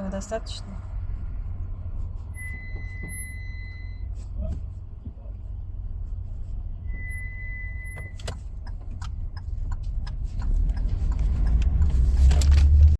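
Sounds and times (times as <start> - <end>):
low car rumble: 0.0 - 12.9
car body clicks and creaks: 7.9 - 12.9.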